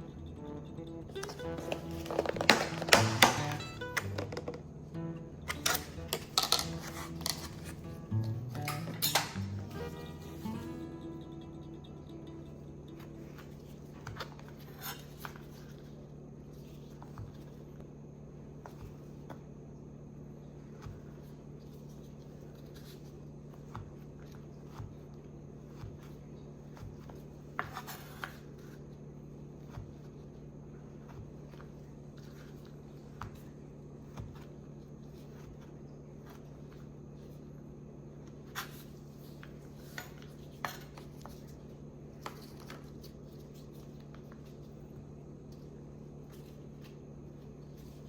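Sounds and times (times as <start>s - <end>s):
steady low hum: 0.0s - 48.0s
utensils and dishes clinking: 5.5s - 11.1s.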